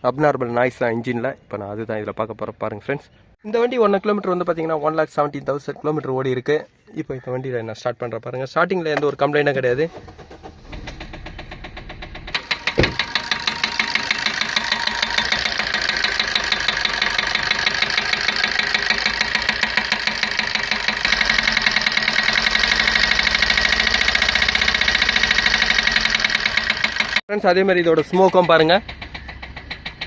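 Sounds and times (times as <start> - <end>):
diesel engine starting and idling: 9.6 - 30.0
engine knocking: 9.9 - 27.2, 27.8 - 30.0.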